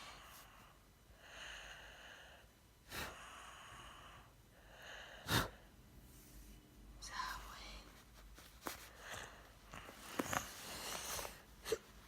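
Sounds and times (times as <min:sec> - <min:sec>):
slow noisy breathing: 0:00.0 - 0:06.5.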